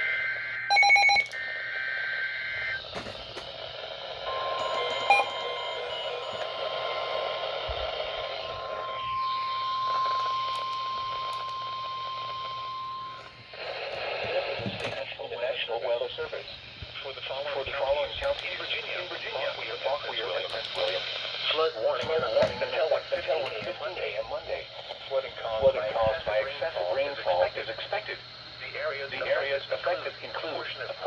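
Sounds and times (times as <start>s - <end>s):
steady warning alarm tone: 0.0s - 15.0s
two-tone data burst: 0.0s - 15.0s
radio static: 0.0s - 31.0s
short pulsing beep: 4.3s - 7.3s.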